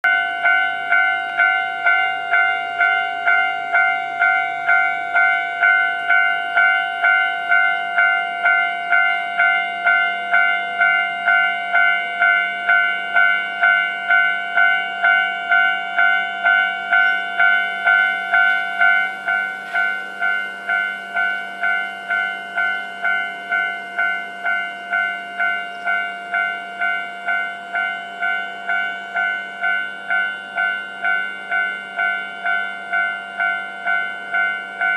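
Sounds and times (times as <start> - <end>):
level-crossing warning bell ringing: 0.0 - 34.9.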